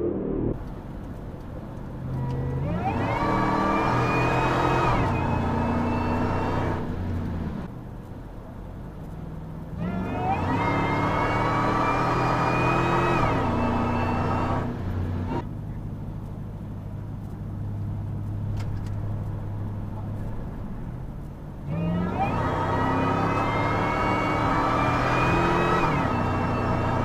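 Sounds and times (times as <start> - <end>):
high whine: 0.0 - 0.6
car engine accelerating hard: 2.5 - 7.7, 9.8 - 15.4, 21.6 - 27.0.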